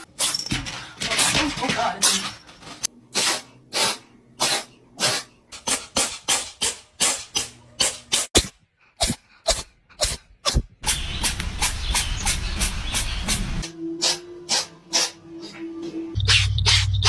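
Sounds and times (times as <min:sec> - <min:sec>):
cat sneezing: 0:03.2 - 0:05.3.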